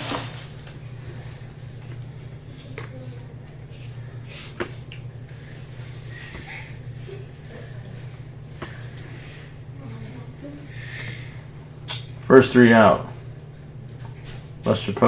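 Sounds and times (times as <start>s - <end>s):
light rustling of card packs: 0.0s - 0.8s
low electrical hum: 0.0s - 15.0s.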